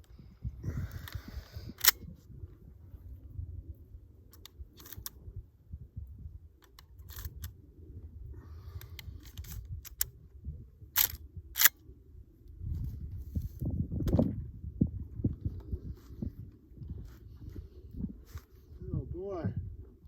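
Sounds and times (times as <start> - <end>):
rifle lever clicks: 1.8 - 2.0, 6.6 - 7.5, 11.0 - 11.8.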